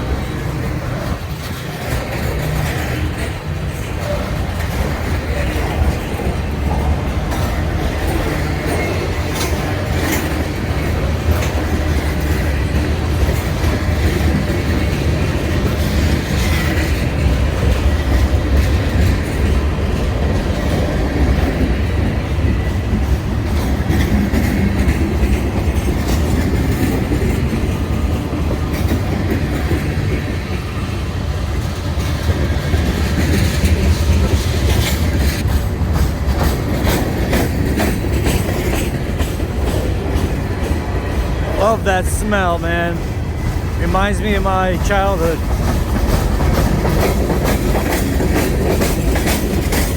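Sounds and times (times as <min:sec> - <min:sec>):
wheels clacking over rail joints: 0:00.0 - 0:41.6, 0:45.4 - 0:49.9
freight train cars rumbling: 0:00.0 - 0:49.9.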